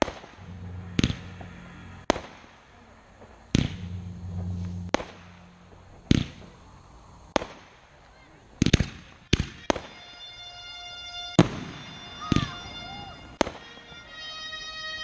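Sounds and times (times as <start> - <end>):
low hum: 0.0 - 8.1
fireworks bangs with crackling: 0.0 - 10.2, 11.3 - 14.3.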